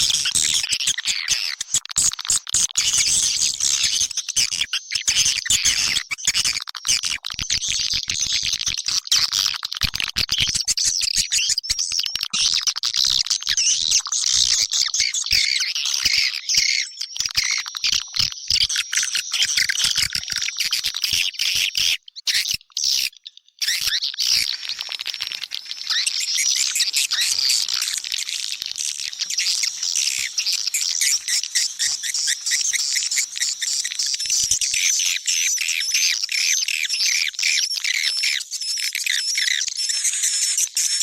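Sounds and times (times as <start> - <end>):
swiftlet chirps and trills: 24.3 - 34.9.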